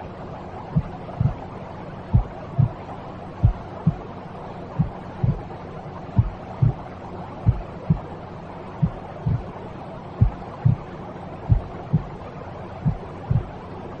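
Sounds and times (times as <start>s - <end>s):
white noise hiss: 0.0s - 14.0s
slow heartbeat thumps: 0.8s - 1.4s, 2.1s - 2.8s, 3.4s - 4.1s, 4.8s - 5.5s, 6.2s - 8.1s, 8.8s - 9.5s, 10.2s - 10.9s, 11.5s - 12.2s, 12.8s - 13.6s.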